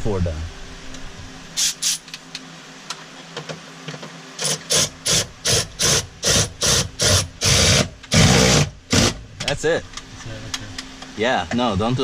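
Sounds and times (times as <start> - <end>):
power driver bursts: 1.6 - 2.1, 4.4 - 9.2.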